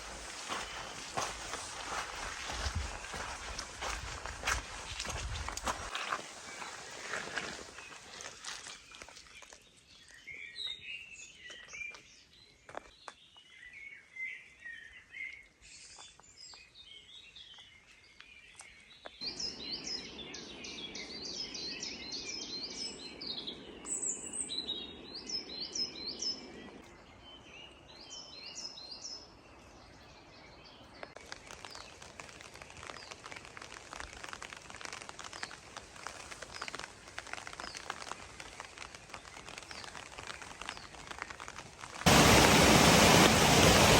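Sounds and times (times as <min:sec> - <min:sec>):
rain patter: 0:00.0 - 0:09.6, 0:31.0 - 0:43.9
songbirds chirping and trilling: 0:06.4 - 0:31.6
low rushing noise: 0:42.1 - 0:43.9.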